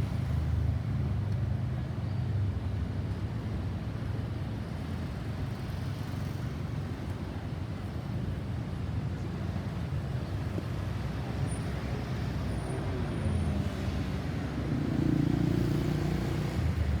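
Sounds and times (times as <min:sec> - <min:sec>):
road traffic rumble: 0:11.1 - 0:17.0.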